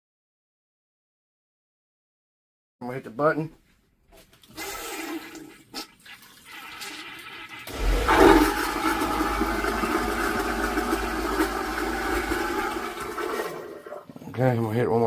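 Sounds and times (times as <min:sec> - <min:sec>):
macerator pump grinding: 0:07.7 - 0:13.9
water sounds: 0:07.7 - 0:14.1.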